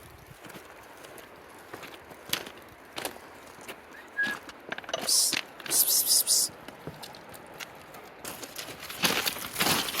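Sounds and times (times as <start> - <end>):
faint footsteps: 0.0 - 10.0
background hiss: 2.7 - 8.2.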